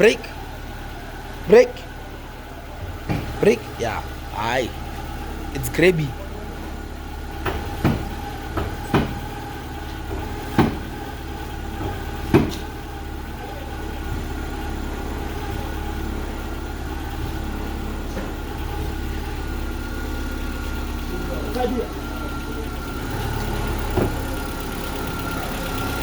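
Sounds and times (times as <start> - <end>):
car engine idling: 0.0 - 26.0
sharp knocks: 7.4 - 9.3, 10.1 - 10.9, 11.8 - 12.7.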